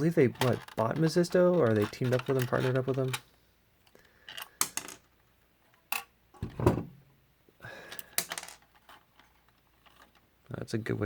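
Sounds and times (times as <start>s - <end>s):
dull heavy thump: 6.4s - 7.0s.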